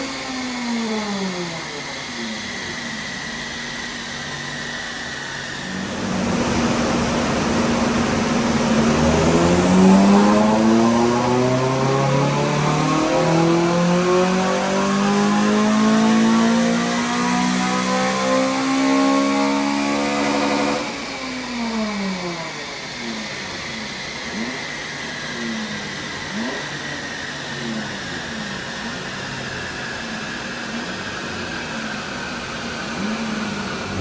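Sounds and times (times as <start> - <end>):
driveline whine: 0.0 - 34.0
car engine revving: 5.5 - 21.7, 29.6 - 34.0.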